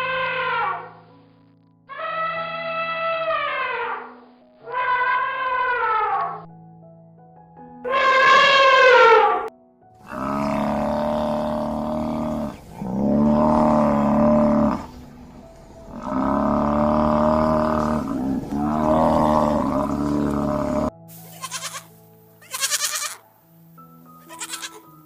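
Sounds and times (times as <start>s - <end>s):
animal calling: 7.9s - 15.0s, 15.9s - 23.2s.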